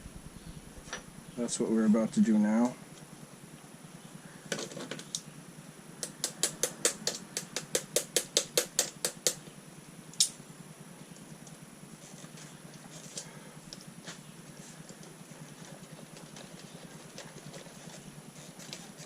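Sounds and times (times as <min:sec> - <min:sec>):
hand tool clicks: 0:06.0 - 0:09.4, 0:10.2 - 0:10.4.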